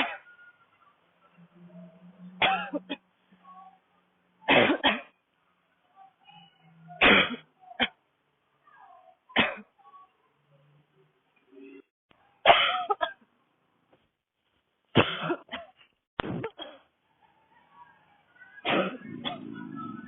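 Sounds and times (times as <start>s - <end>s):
woman coughing: 2.4s - 3.0s, 4.5s - 5.2s, 7.0s - 8.0s, 9.4s - 9.7s, 12.4s - 13.2s, 15.0s - 15.8s, 18.6s - 19.4s.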